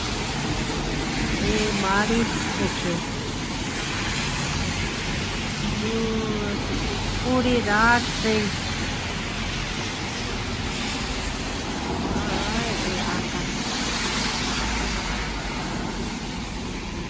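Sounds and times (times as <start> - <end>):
rain hissing: 0.0 - 17.0
traffic on wet pavement: 0.0 - 17.0.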